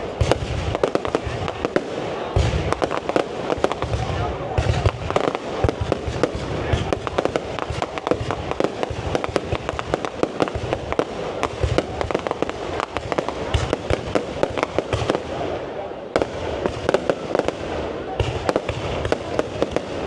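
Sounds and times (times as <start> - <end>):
fireworks cracks and bangs: 0.0 - 20.0.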